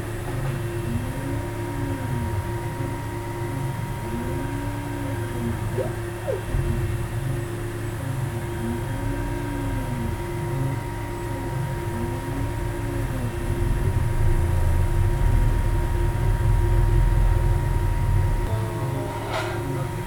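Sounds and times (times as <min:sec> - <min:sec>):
steady low hum: 0:00.0 - 0:20.0
stepper motors whining: 0:00.3 - 0:15.6.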